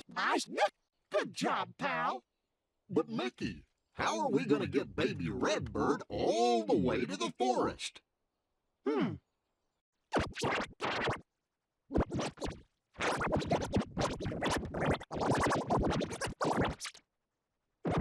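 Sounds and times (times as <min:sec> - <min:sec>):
choppy turntable scratching: 0:10.1 - 0:11.2, 0:11.9 - 0:17.0.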